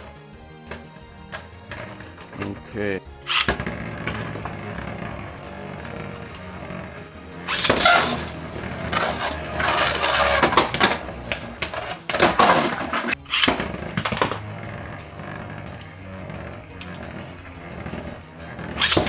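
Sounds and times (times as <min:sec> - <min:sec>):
spinning tops clashing and grinding: 0:07.3 - 0:14.4.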